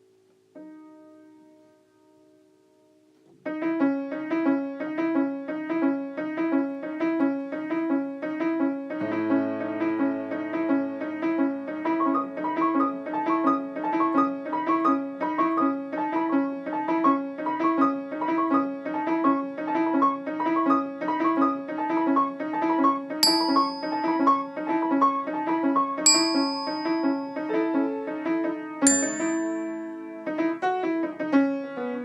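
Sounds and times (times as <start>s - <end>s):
piano music: 3.4s - 32.0s
sharp high ding: 23.2s - 24.5s, 26.1s - 27.8s, 28.8s - 30.0s.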